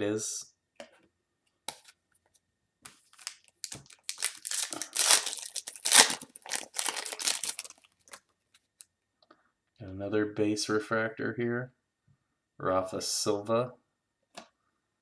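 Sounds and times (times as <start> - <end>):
foil pack tearing and crinkling: 3.2 - 7.8.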